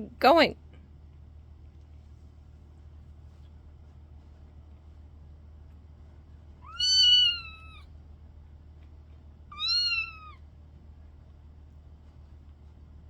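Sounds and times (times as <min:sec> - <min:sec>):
kitten meowing: 0:06.6 - 0:07.8, 0:09.5 - 0:10.4.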